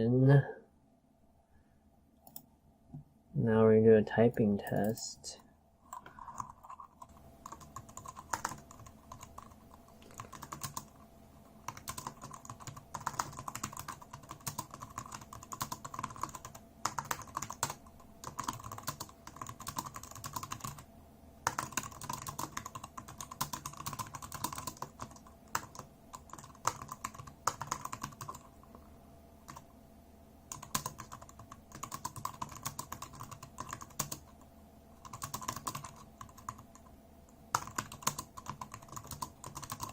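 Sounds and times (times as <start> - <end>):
keyboard typing clicks: 2.2 - 2.5, 5.9 - 10.9, 37.6 - 39.9.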